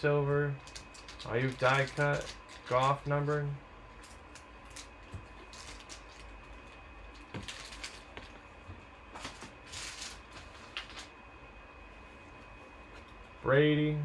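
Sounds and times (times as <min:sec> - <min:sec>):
trading cards rustling and sliding: 0:00.6 - 0:08.4, 0:09.1 - 0:11.1.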